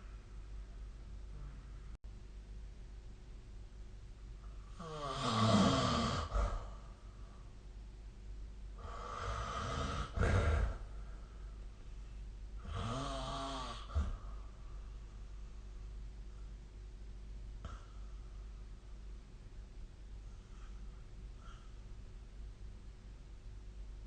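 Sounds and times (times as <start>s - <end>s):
person snoring: 4.7s - 6.9s, 8.8s - 11.1s, 12.6s - 14.4s.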